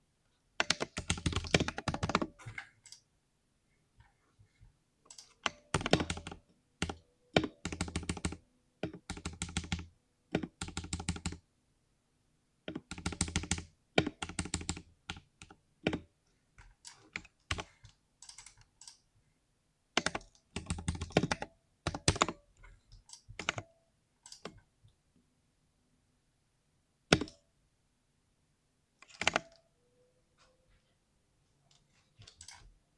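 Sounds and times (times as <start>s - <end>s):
mechanical keyboard typing: 0.6s - 3.0s, 5.1s - 11.4s, 12.7s - 16.0s, 20.0s - 22.4s, 23.0s - 23.7s, 29.0s - 29.6s, 32.2s - 32.6s.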